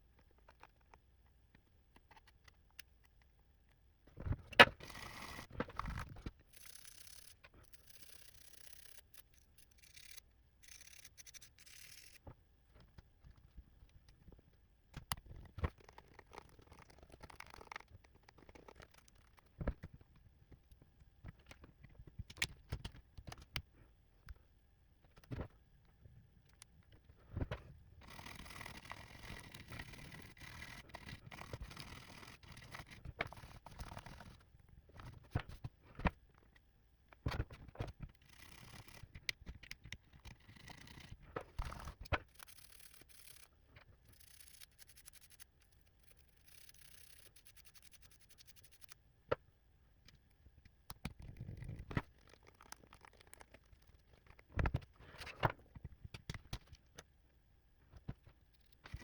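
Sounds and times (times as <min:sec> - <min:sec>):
brush scrubbing keyboard keys: 0:04.8 - 0:05.5, 0:06.5 - 0:12.2, 0:41.7 - 0:43.4, 0:44.1 - 0:48.9.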